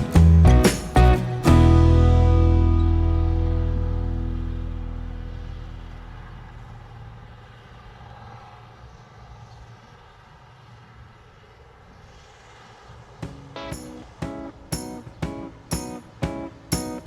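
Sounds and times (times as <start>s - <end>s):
music: 0.0s - 5.2s, 13.3s - 17.0s
guitar strumming: 0.0s - 6.2s, 13.2s - 17.0s
faint low drone: 1.1s - 7.4s.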